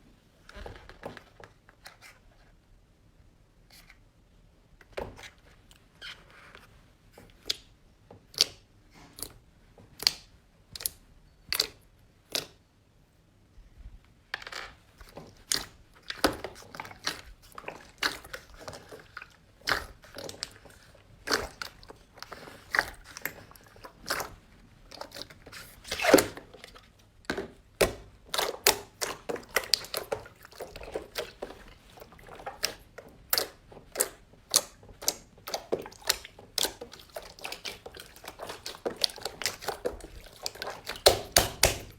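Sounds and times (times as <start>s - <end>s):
slime clicking and crackling: 27.8s - 41.9s.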